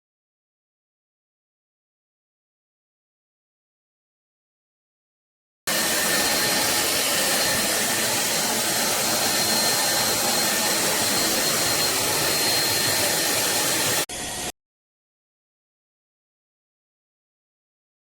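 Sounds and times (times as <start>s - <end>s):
vacuum cleaner motor running: 5.7s - 14.5s.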